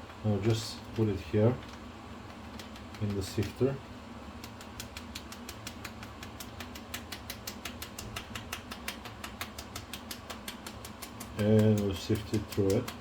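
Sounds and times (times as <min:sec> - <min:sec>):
kitchen sifter clicking: 0:04.4 - 0:13.0.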